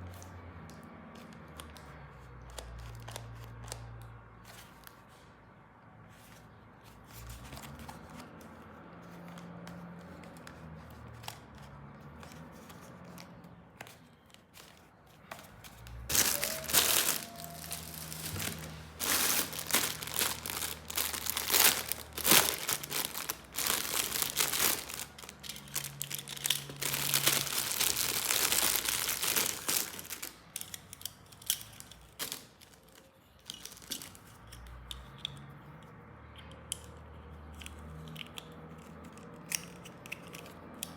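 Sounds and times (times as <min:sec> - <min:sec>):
plastic packaging crinkling and tearing: 0:11.0 - 0:34.3.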